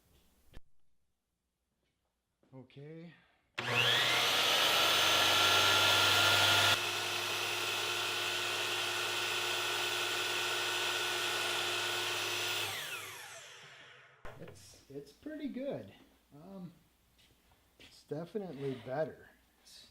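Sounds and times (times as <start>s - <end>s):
miter saw motor whining: 3.6s - 14.2s.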